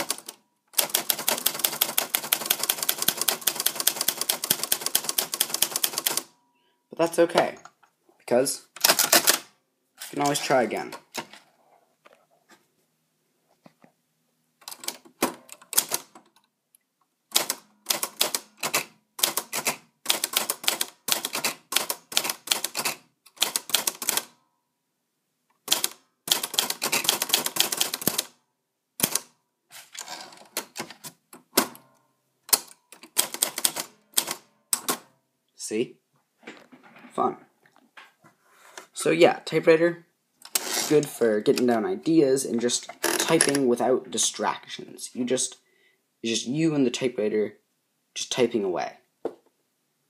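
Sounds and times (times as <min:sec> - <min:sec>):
typewriter keys clattering: 0:00.0 - 0:06.3, 0:08.8 - 0:09.4, 0:14.6 - 0:16.4, 0:17.3 - 0:24.4, 0:25.7 - 0:28.3, 0:32.5 - 0:35.0.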